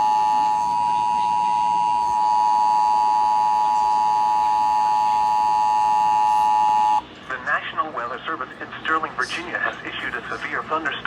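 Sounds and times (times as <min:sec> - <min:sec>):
two-tone alert signal buzz: 0:00.0 - 0:07.0.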